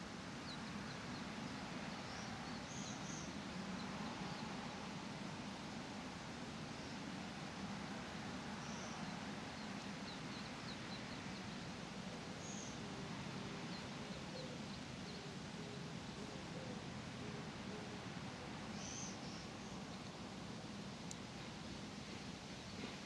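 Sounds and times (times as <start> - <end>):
outdoor ambience hiss: 0.0 - 23.0
small birds chirping: 0.4 - 5.0, 8.5 - 21.3.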